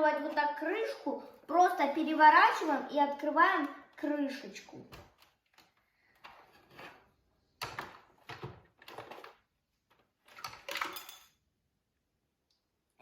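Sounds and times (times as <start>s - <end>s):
hard plastic scraping and knocking: 4.9s - 10.7s.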